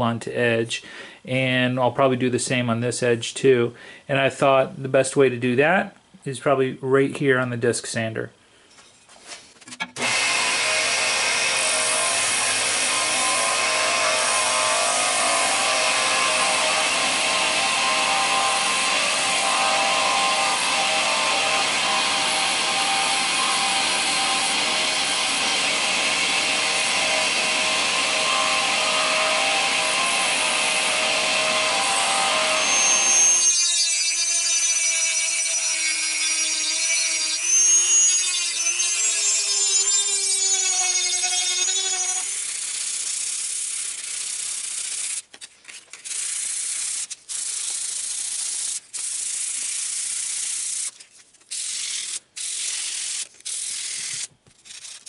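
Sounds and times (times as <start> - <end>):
disc sander grinding wood: 10.0 - 43.0.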